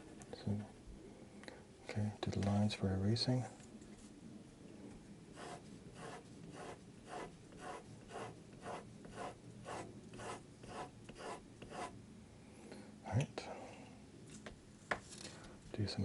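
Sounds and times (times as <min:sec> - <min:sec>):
pencil scratching on paper: 0:05.3 - 0:12.0.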